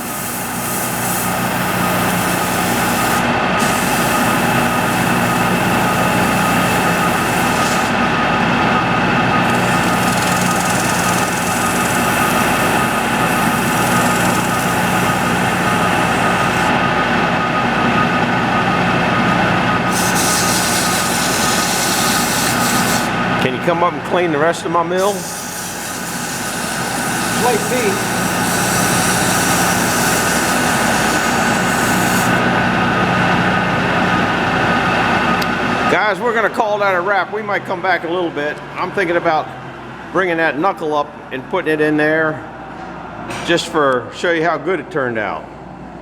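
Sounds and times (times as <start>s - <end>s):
sawmill machine hum: 0.0s - 35.9s
high hiss: 25.0s - 32.4s.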